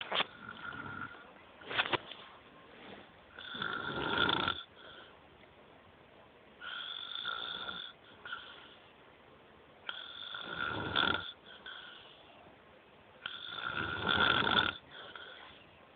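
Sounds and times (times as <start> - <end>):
whistling snores: 9.9 - 12.1, 13.2 - 15.6.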